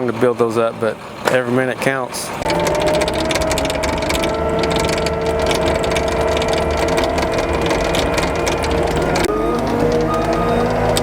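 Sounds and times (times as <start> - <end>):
rapid mechanical clatter: 0.0 - 11.0
crane machinery whine: 2.3 - 11.0.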